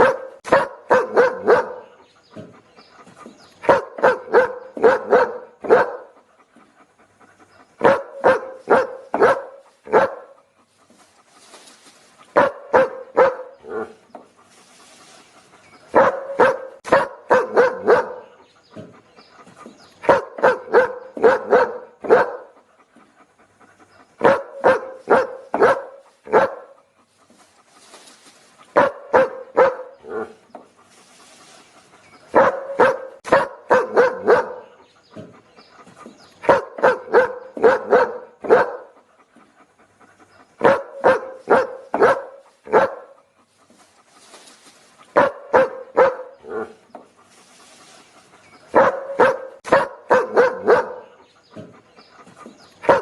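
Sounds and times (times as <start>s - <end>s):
dog barking: 0.0s - 2.0s, 3.6s - 6.2s, 7.8s - 10.4s, 12.3s - 14.0s, 15.9s - 18.4s, 20.0s - 22.6s, 24.2s - 26.8s, 28.7s - 30.4s, 32.3s - 35.3s, 36.4s - 39.0s, 40.6s - 43.2s, 45.1s - 46.8s, 48.7s - 51.7s, 52.8s - 53.0s
dog breathing: 1.3s - 53.0s.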